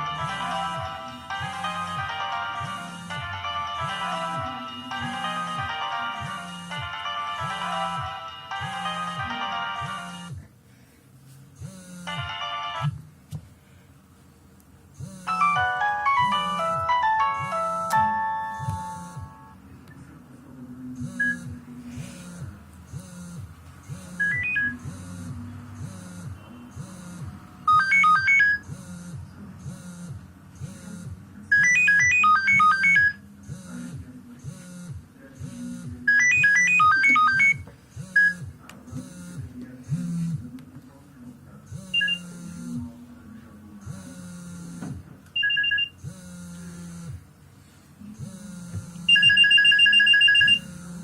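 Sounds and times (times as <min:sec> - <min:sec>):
high beeping melody: 0:00.0 - 0:10.3, 0:15.1 - 0:19.6, 0:26.8 - 0:28.9, 0:36.1 - 0:38.4, 0:49.0 - 0:50.7
electronic drum beat: 0:01.1 - 0:03.0, 0:16.2 - 0:19.5.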